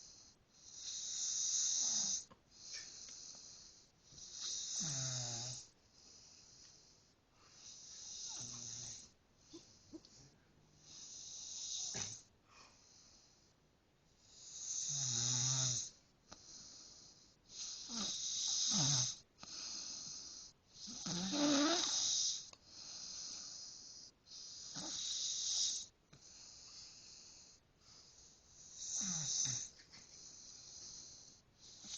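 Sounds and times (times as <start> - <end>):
man snoring: 0.6 - 2.2, 4.2 - 5.7, 7.6 - 9.1, 10.8 - 12.2, 14.4 - 16.0, 17.6 - 19.2, 19.8 - 25.9, 28.6 - 29.7.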